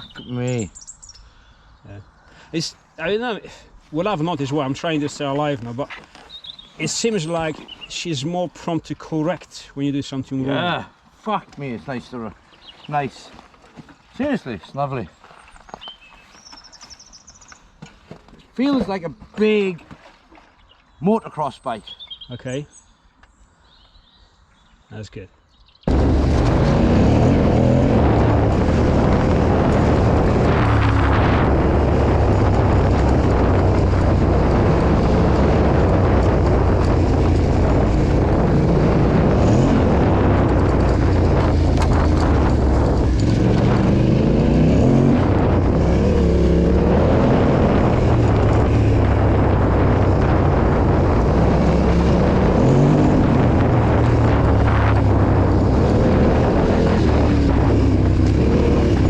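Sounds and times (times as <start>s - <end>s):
motorcycle engine revving: 25.9s - 59.0s.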